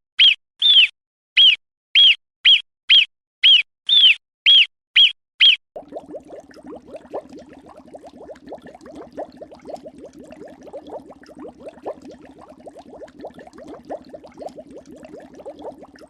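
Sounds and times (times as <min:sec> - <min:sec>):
water bubbling and gurgling: 0:05.8 - 0:16.0.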